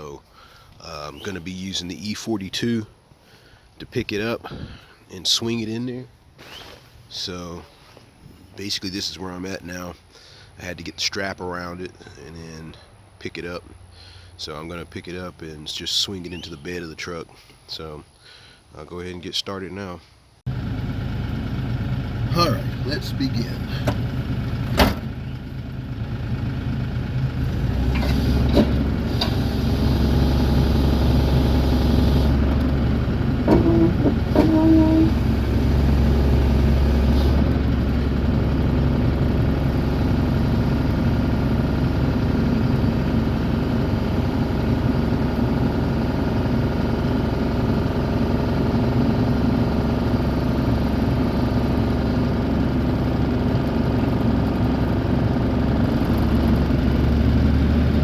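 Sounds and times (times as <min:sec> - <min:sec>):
brief squeal: 0:06.4 - 0:06.9, 0:33.5 - 0:35.3
excavator diesel engine running: 0:20.5 - 0:58.0.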